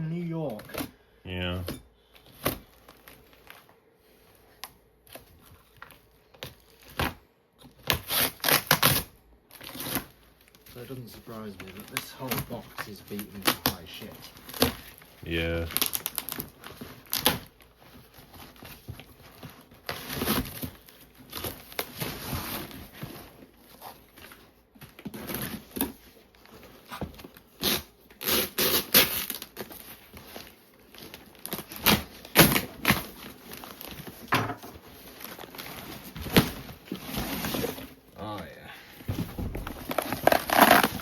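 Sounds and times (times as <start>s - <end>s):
cardboard tearing and crinkling: 7.8s - 10.2s, 11.3s - 38.0s, 39.2s - 41.0s.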